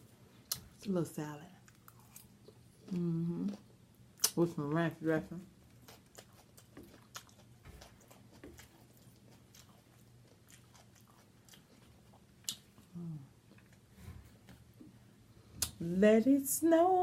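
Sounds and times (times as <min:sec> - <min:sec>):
chewing and crunching salad: 0:01.6 - 0:13.9
person humming: 0:02.9 - 0:03.6, 0:12.9 - 0:13.3.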